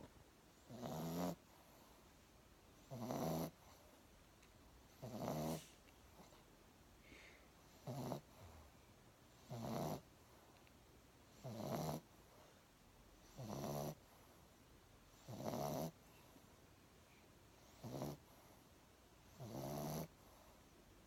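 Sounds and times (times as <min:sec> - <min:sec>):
pet snoring: 0:00.6 - 0:01.9, 0:02.8 - 0:03.9, 0:04.9 - 0:06.4, 0:07.7 - 0:08.7, 0:09.4 - 0:10.1, 0:11.3 - 0:12.1, 0:13.2 - 0:14.2, 0:15.1 - 0:16.0, 0:17.6 - 0:18.6, 0:19.3 - 0:20.5.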